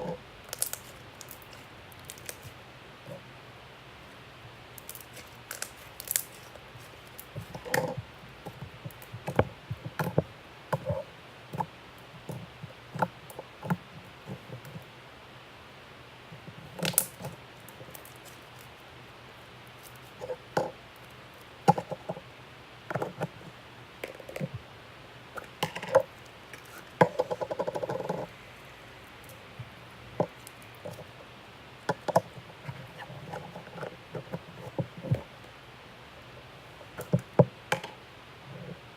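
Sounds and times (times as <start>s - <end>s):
crackling run of tiny pops: 0.0s - 3.2s, 4.1s - 14.9s, 16.3s - 22.2s, 29.0s - 35.6s
slime squelching: 0.4s - 3.2s, 4.8s - 9.3s.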